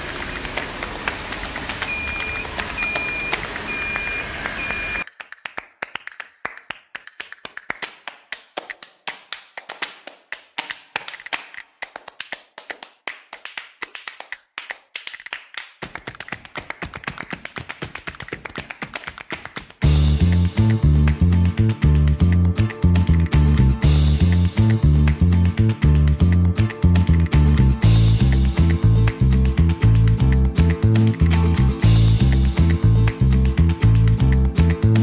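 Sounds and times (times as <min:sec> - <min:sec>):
machine hum: 0:00.0 - 0:05.0
high electronic beep: 0:01.8 - 0:05.0.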